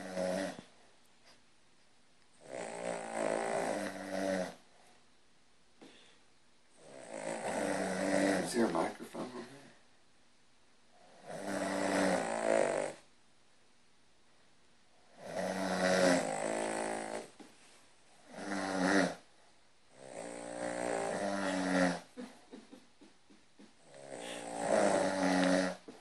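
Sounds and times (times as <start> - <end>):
dog and person snoring: 0.0 - 0.8, 2.4 - 4.6, 6.8 - 8.7, 11.0 - 13.1, 15.1 - 17.4, 18.2 - 19.3, 19.9 - 22.2, 23.8 - 25.9.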